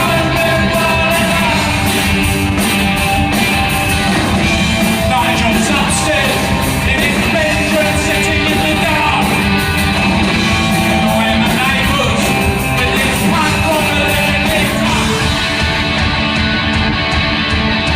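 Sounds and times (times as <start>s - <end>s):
man singing: 0.0s - 2.2s, 5.0s - 9.5s, 10.4s - 15.7s
punk rock band playing: 0.0s - 17.9s.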